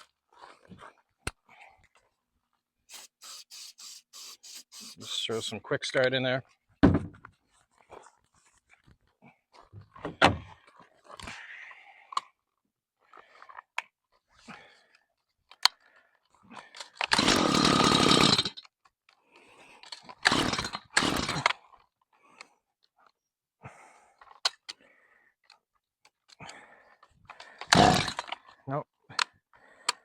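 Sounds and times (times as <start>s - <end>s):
starter cord yanks: 17.0s - 18.6s, 20.2s - 21.5s, 27.5s - 28.4s
chainsaw engine firing briefly: 17.2s - 18.5s, 20.3s - 21.4s, 27.7s - 28.3s.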